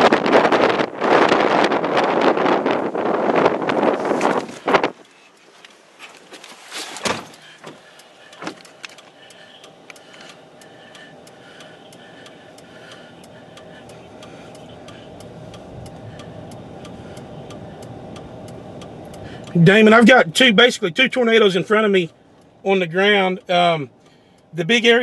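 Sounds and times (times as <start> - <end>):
vehicle engine and road noise: 0.0 - 25.0
faint regular ticking: 7.3 - 25.0.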